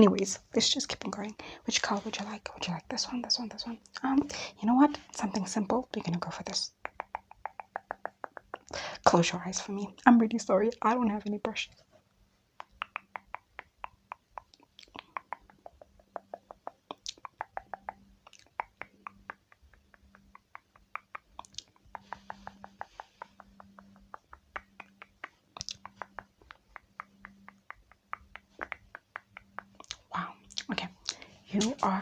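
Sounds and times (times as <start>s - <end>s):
fingertip tapping and patting: 4.9s - 8.8s, 12.6s - 32.0s.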